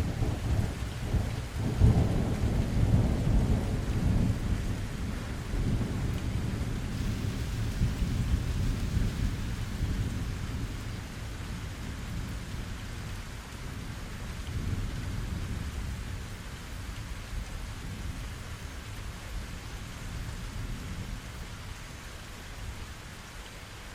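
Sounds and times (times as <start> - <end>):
thunder rumbling: 0.0 - 12.8
steady rain: 0.0 - 23.9.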